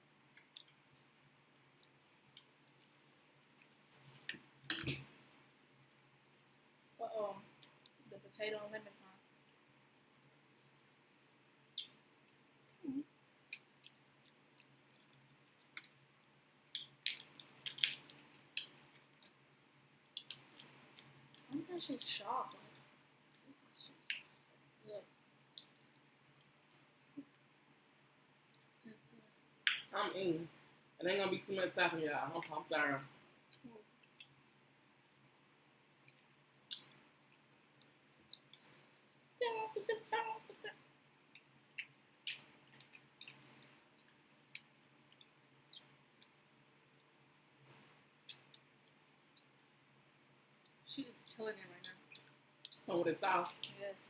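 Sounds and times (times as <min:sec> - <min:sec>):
low steady hum: 0:00.0 - 0:54.0
wet chewing and mouth noises: 0:13.0 - 0:19.4, 0:41.2 - 0:46.4
mouth clicks of chewing: 0:41.3 - 0:46.4, 0:47.7 - 0:48.7.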